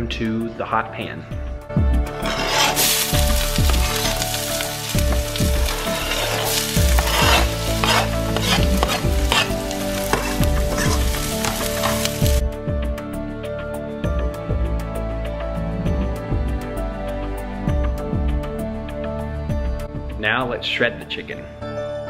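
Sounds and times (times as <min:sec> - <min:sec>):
background music with a beat: 0:01.5 - 0:02.2, 0:06.6 - 0:20.2
vegetables sizzling in a pan: 0:02.5 - 0:12.4.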